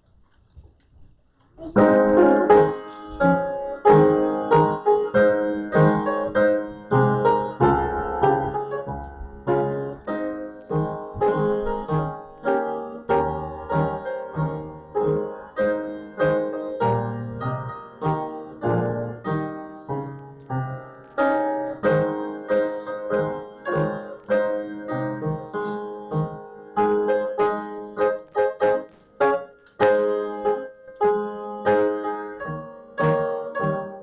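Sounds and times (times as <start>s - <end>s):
slow piano church music: 1.6s - 34.0s.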